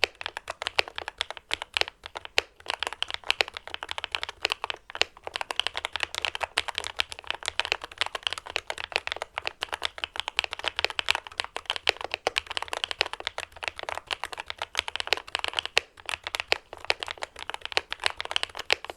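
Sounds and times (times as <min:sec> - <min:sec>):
mechanical keyboard typing: 0:00.0 - 0:18.9.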